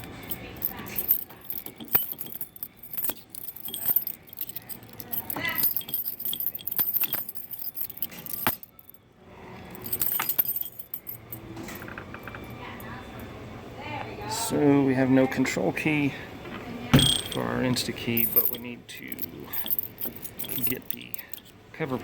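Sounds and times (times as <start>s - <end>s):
keys jangling: 0.0s - 9.0s, 9.7s - 12.8s, 17.0s - 21.6s.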